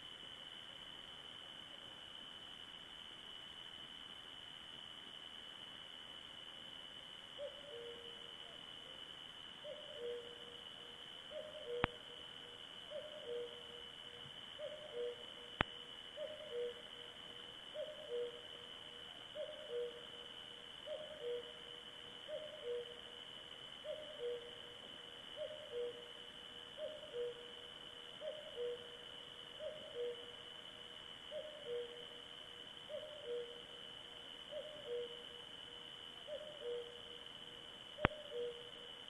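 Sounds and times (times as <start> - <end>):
owl-like two-note hoot: 7.4 - 8.1, 9.6 - 10.5, 11.3 - 12.0, 12.9 - 13.8, 14.6 - 15.3, 16.2 - 16.8, 17.7 - 18.4, 19.3 - 20.1, 20.8 - 21.6, 22.3 - 23.0, 23.8 - 24.5, 25.4 - 26.1, 26.8 - 27.5, 28.2 - 29.0, 29.6 - 30.2, 31.3 - 32.0, 32.9 - 33.6, 34.5 - 35.3, 36.3 - 37.0, 38.0 - 38.8.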